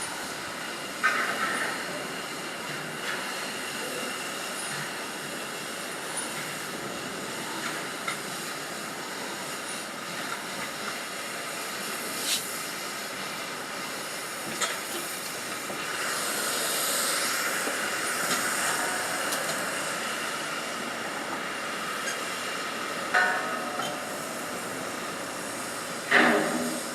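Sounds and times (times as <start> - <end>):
hiss: 0.0 - 26.9
steady industrial din: 23.0 - 26.9.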